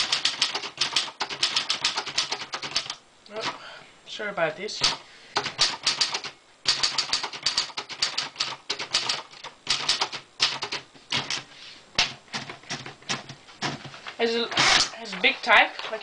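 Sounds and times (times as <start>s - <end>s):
manual typewriter typing: 0.0s - 3.6s, 4.8s - 16.0s.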